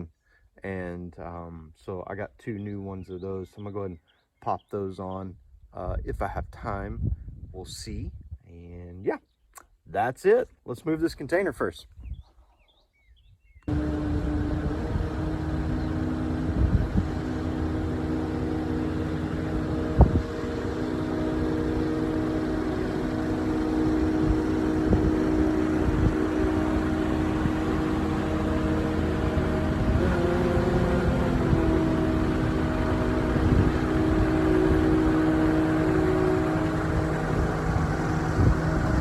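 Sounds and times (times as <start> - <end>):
heavy equipment engine running: 13.7 - 39.0.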